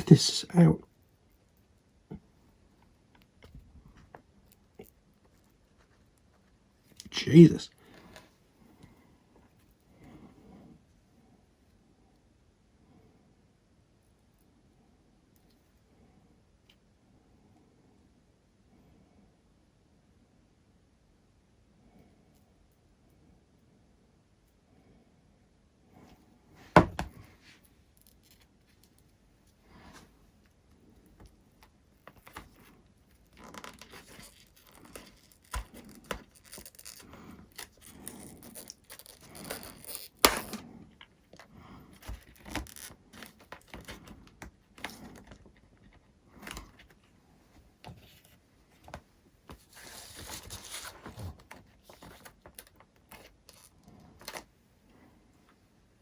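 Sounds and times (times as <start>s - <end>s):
scraping rustling and tearing: 32.1s - 40.6s, 49.6s - 52.6s.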